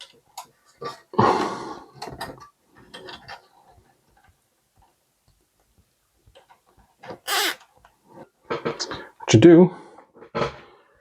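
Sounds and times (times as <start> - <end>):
cable tie zipping: 7.2 - 7.7.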